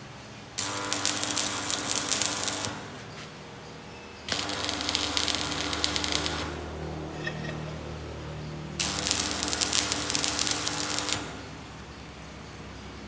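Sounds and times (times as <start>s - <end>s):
steady welder hum: 0.5s - 3.5s, 4.2s - 11.9s
arc welding crackling: 0.6s - 3.1s, 4.3s - 6.8s, 8.8s - 11.8s.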